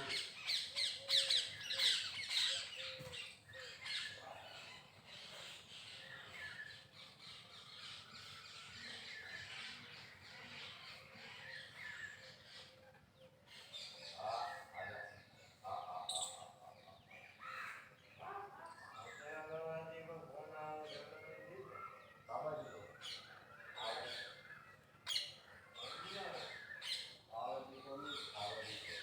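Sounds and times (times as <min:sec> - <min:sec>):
birds squawking: 0:00.0 - 0:06.4, 0:20.6 - 0:29.0
birds chattering: 0:00.0 - 0:29.0.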